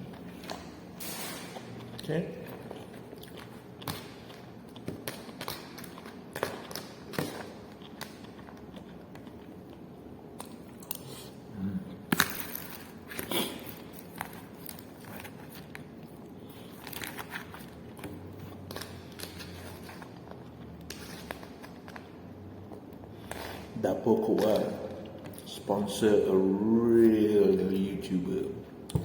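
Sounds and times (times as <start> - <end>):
person chewing: 1.5 - 22.0.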